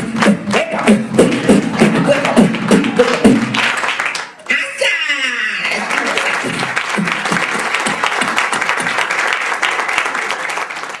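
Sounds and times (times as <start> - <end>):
audience applauding: 2.2 - 4.6, 5.5 - 11.0.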